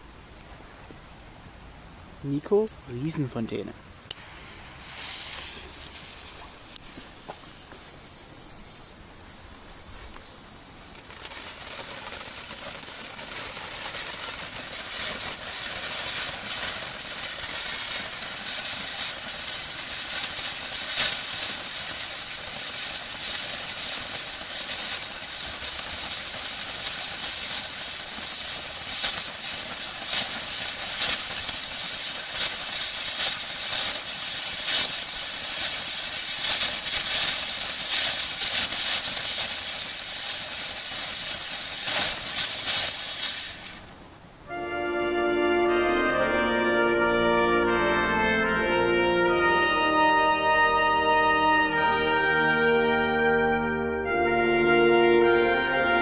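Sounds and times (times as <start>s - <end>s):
firework crackles: 2.2s - 45.8s
firework fountain spraying hiss: 2.2s - 45.8s.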